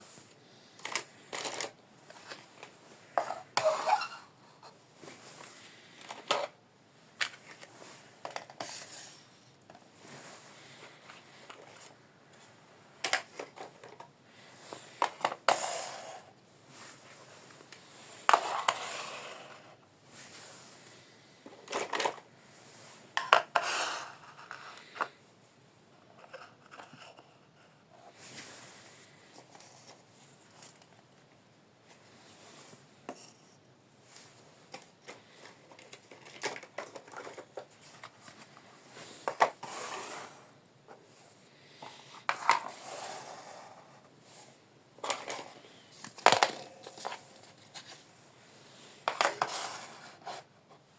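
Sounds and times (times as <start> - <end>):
plastic toy pieces clattering: 0.8 - 4.3, 6.0 - 6.6, 21.5 - 22.2, 34.7 - 37.7, 45.0 - 47.7.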